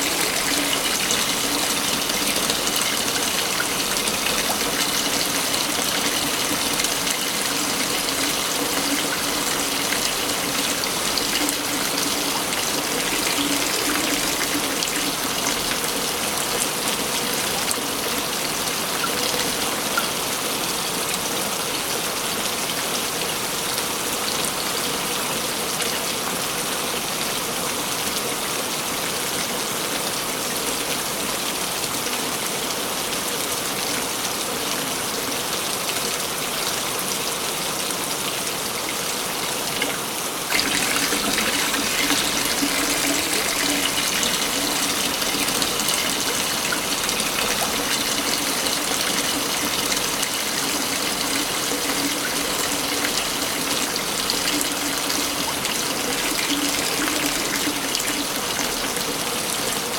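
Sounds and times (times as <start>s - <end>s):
waterfall rushing: 0.0s - 15.7s.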